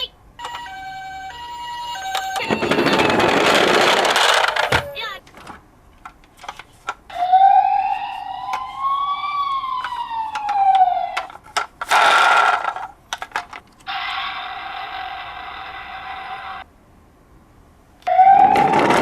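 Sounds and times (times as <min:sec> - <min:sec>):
toy electronic siren wailing: 0:00.4 - 0:05.2, 0:07.1 - 0:11.3, 0:13.9 - 0:16.6, 0:18.0 - 0:19.0.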